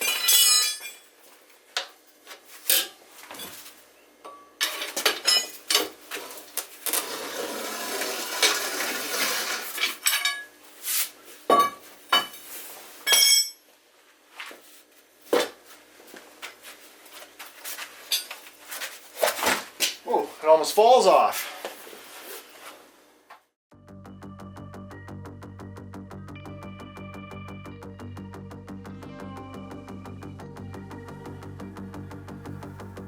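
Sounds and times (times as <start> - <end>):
ringing metal clink: 0.0 - 1.0, 13.1 - 13.6
metal tools clinking and scraping: 0.0 - 1.1, 2.6 - 5.9, 9.7 - 10.5, 13.0 - 13.6, 18.0 - 18.5.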